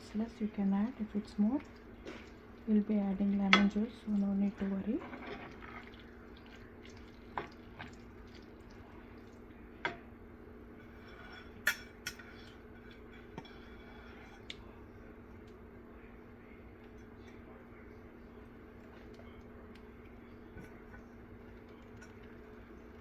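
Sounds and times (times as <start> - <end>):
spoon mashing food in a pan: 0.6 - 10.1.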